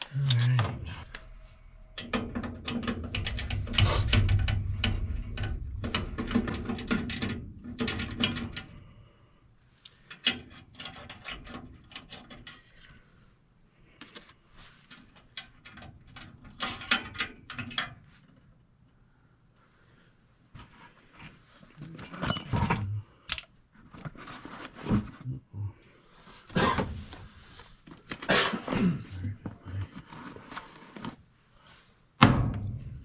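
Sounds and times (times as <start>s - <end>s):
low hum: 0.3s - 9.4s.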